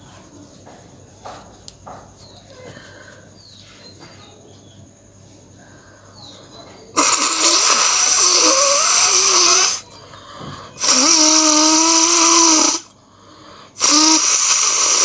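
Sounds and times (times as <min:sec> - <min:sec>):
woman blowing her nose: 0:07.0 - 0:09.8, 0:10.8 - 0:12.9, 0:13.8 - 0:15.0.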